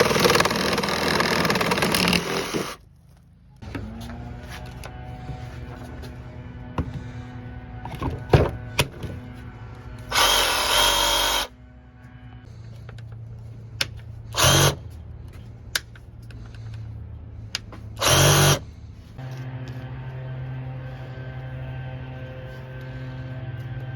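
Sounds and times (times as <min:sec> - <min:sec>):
reciprocating saw running: 0:00.0 - 0:02.8, 0:10.0 - 0:11.5, 0:18.0 - 0:23.5.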